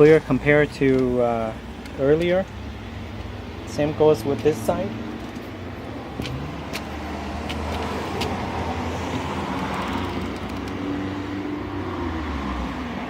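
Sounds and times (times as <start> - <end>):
vehicle engine running: 1.3 - 10.8.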